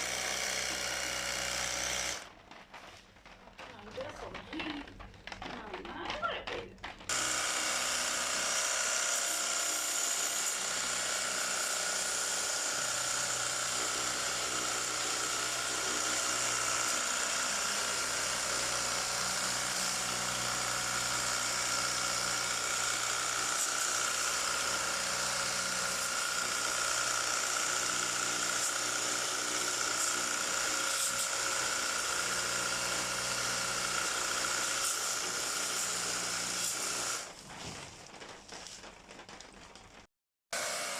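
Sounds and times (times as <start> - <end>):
pressure washer running: 0.0 - 2.2, 7.1 - 37.3, 40.6 - 40.9.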